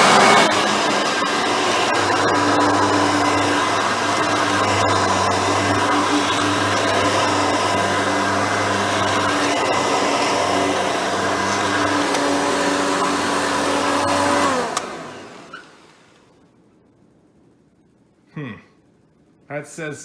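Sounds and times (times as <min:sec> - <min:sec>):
upright vacuum running: 0:00.0 - 0:16.2
vacuum switch click: 0:14.6 - 0:15.0.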